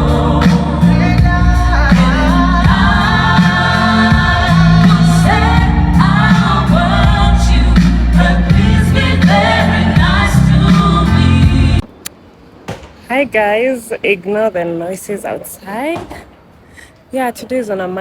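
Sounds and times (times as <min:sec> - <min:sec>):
song with singing and full band: 0:00.0 - 0:11.9.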